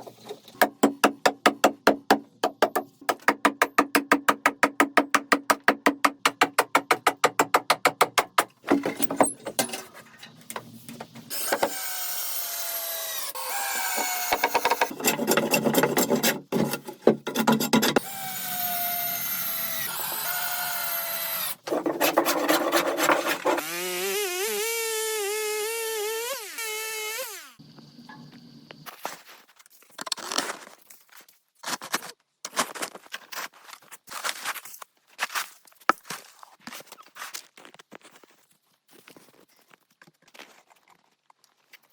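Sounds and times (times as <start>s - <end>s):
tool grinding into wood: 11.3s - 27.6s.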